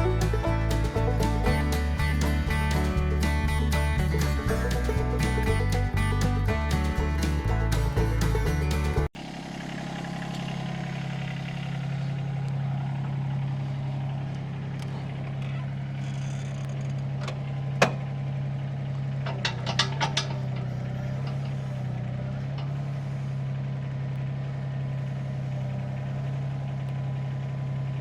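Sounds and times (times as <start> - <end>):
diesel engine running: 0.0 - 28.0
sharp metallic clanks: 19.3 - 21.8.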